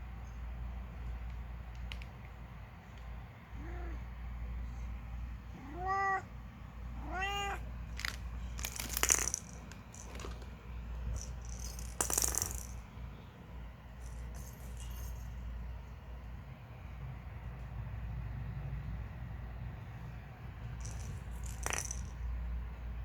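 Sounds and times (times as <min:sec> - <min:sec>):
cat meowing: 0:03.6 - 0:04.0, 0:05.6 - 0:06.3, 0:07.0 - 0:07.7
rattling clatter: 0:20.8 - 0:22.2.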